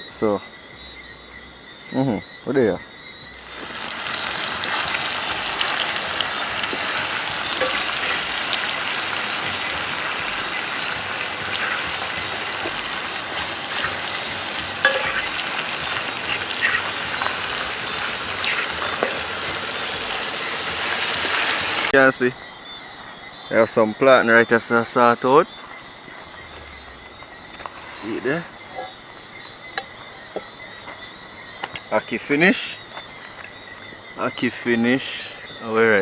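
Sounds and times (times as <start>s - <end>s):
fire crackling and popping: 3.2s - 22.0s, 25.7s - 34.0s
food sizzling in a pot: 3.3s - 22.0s.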